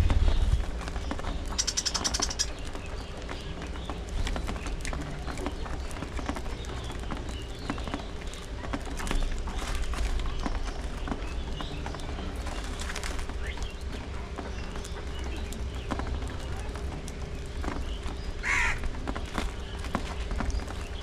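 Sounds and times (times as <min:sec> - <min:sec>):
budgerigars chattering: 0:01.5 - 0:02.7.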